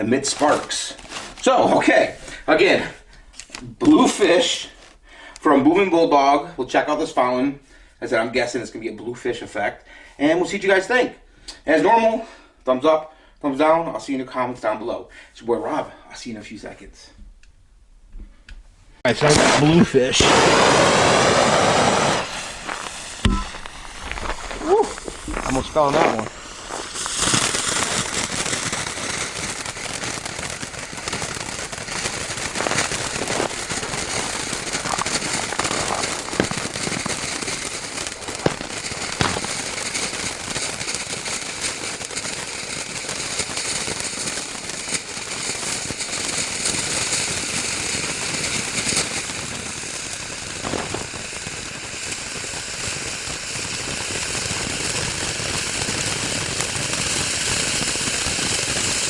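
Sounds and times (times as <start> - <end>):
firework hissing spray of sparks: 0.0 - 5.0, 19.1 - 59.0
firework pops and cracks: 0.0 - 5.9, 19.1 - 59.0.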